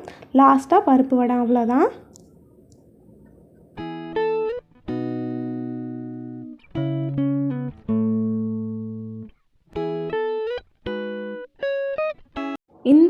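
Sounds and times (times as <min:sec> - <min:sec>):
plucked chords instrumental music: 0:03.8 - 0:12.6.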